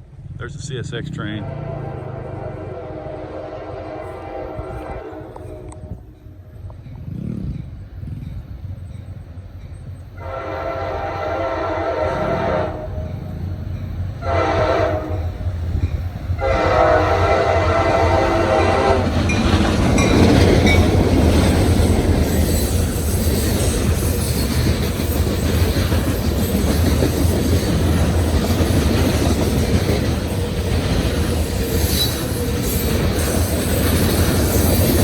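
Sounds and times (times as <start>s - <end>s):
train rumbling past: 0.0s - 35.0s
locomotive air horn: 1.4s - 6.1s, 10.2s - 13.2s, 14.2s - 15.4s, 16.4s - 19.1s
rail cars clattering on track: 5.1s - 11.2s, 12.7s - 35.0s.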